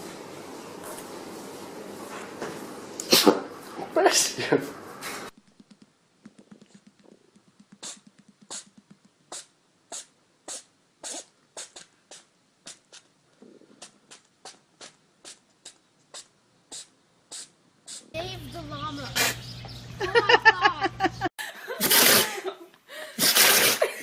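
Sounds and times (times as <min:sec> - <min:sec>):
small animal sneezing: 0:03.0 - 0:03.4, 0:07.8 - 0:18.2, 0:19.2 - 0:19.4, 0:21.8 - 0:22.4, 0:23.2 - 0:23.9
faint quick puffs: 0:05.0 - 0:18.2.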